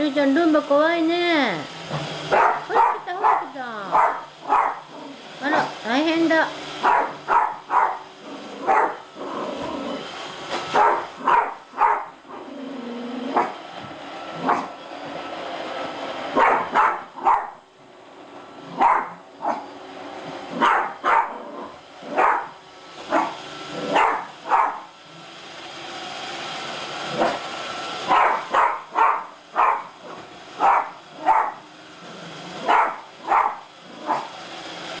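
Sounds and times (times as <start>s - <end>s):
robot vacuum humming: 0.0s - 35.0s
dog barking: 2.3s - 4.9s, 6.8s - 9.0s, 10.7s - 12.1s, 13.4s - 13.6s, 14.4s - 14.7s, 16.4s - 17.6s, 18.8s - 19.6s, 20.6s - 21.4s, 22.1s - 22.5s, 23.1s - 24.9s, 28.1s - 30.0s, 30.6s - 31.6s, 32.6s - 34.3s.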